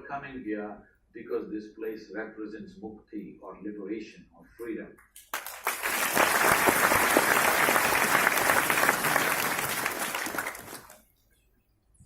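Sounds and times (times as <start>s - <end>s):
crowd applauding: 5.2s - 11.0s.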